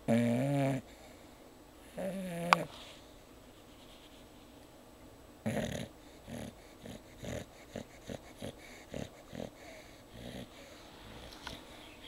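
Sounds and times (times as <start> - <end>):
pet snoring: 0.1 - 0.8, 1.9 - 2.7, 5.4 - 11.8.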